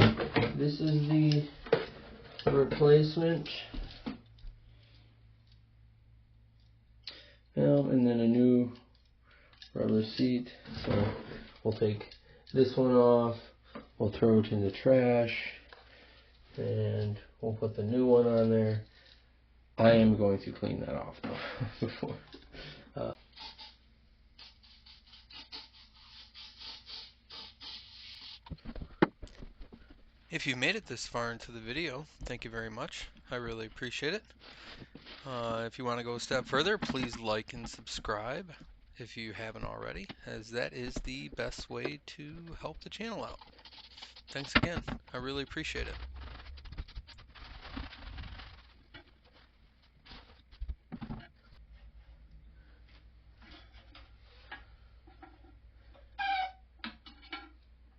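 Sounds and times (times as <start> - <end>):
brush scrubbing toilet valve: 23.2 - 28.6, 42.6 - 44.6.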